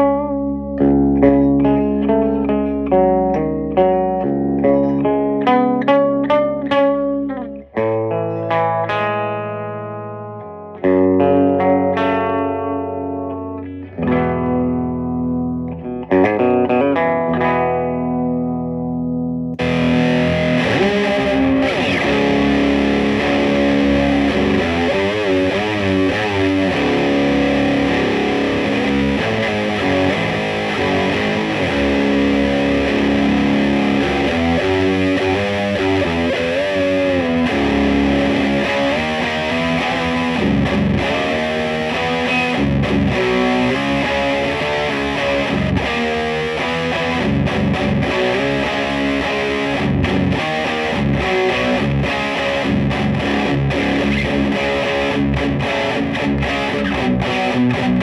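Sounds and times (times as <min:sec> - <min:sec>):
clean electric guitar chords: 0:00.0 - 0:58.0
distorted electric guitar riffs: 0:00.0 - 0:58.0.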